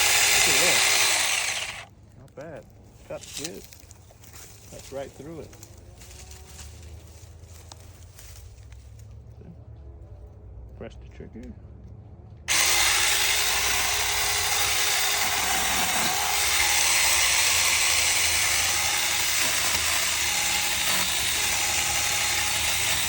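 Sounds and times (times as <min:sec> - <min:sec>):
electric chainsaw running: 0:00.0 - 0:01.9, 0:12.5 - 0:23.0.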